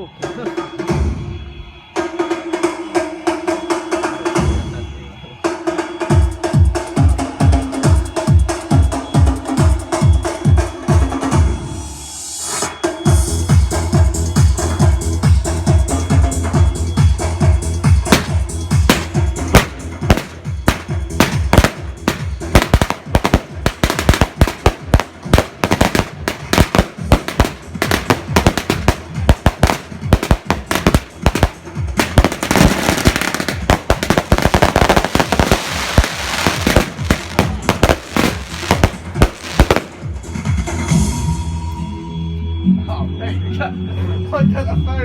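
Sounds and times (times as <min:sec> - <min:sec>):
fireworks banging and crackling: 0:18.0 - 0:40.6.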